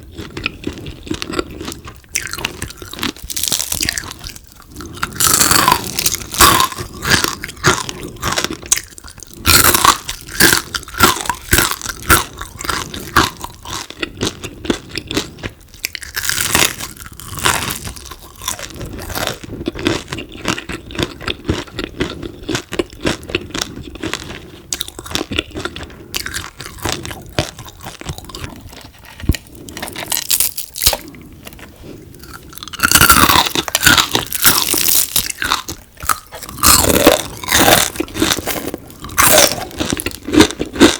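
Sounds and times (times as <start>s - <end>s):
person chewing crunchy food: 0.0s - 40.9s.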